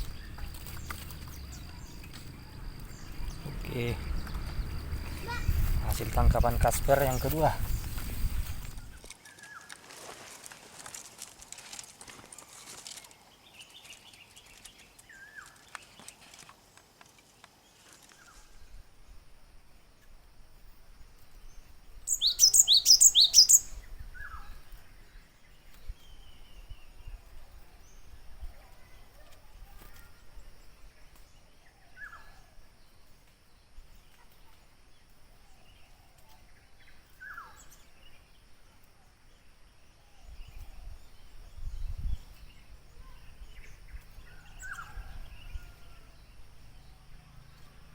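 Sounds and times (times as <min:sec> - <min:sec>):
bird calls: 0:00.0 - 0:09.8, 0:22.0 - 0:33.0, 0:35.4 - 0:38.2, 0:40.0 - 0:47.8.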